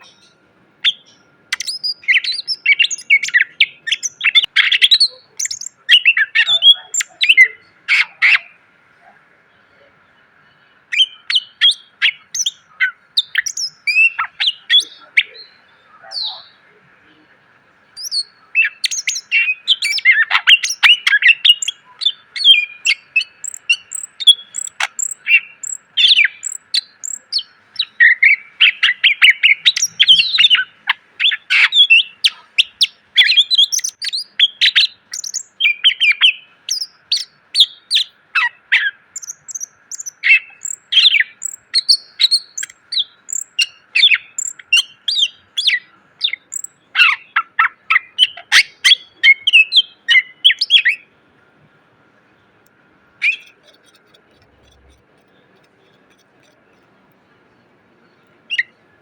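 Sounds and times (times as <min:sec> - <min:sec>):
bird singing chirps and whistles: 0:00.0 - 0:08.5, 0:10.9 - 0:16.5, 0:18.0 - 0:51.1, 0:58.5 - 0:58.8.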